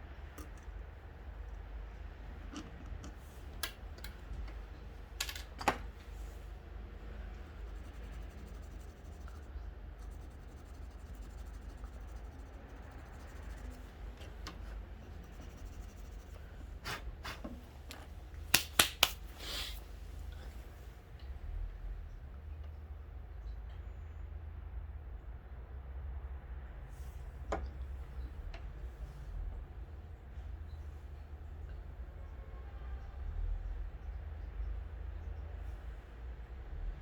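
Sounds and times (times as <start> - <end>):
low steady hum: 0.0 - 37.0
small parts clicking and tapping: 5.2 - 5.8.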